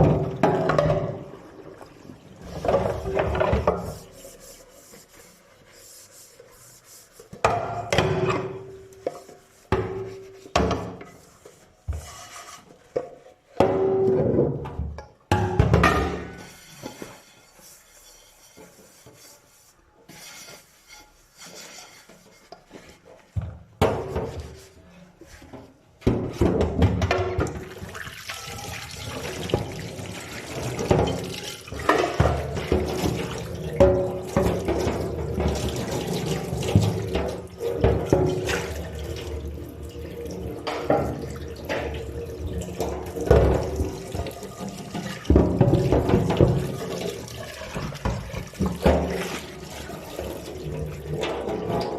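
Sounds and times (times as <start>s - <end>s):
tap water running into sink: 27.3s - 51.9s.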